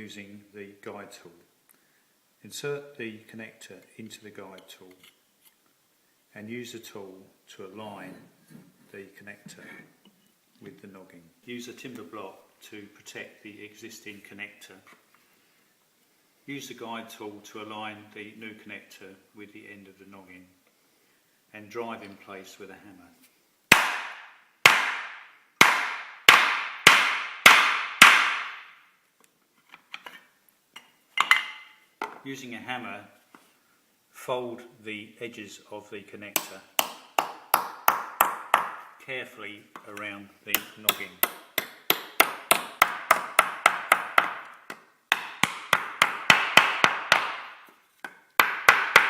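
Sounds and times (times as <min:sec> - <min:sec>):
hammer striking: 0:23.7 - 0:28.7, 0:36.4 - 0:38.8, 0:40.5 - 0:47.6, 0:48.4 - 0:49.0.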